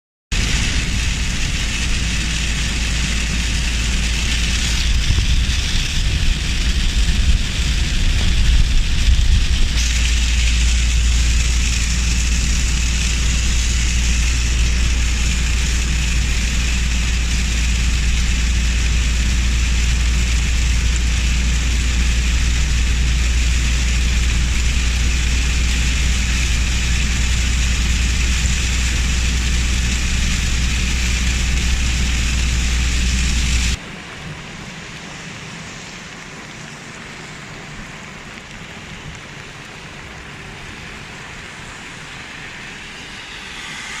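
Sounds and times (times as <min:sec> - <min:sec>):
low buffeting: 0:00.3 - 0:33.9
heavy rain hissing: 0:00.3 - 0:44.0
vehicle road noise: 0:00.3 - 0:44.0.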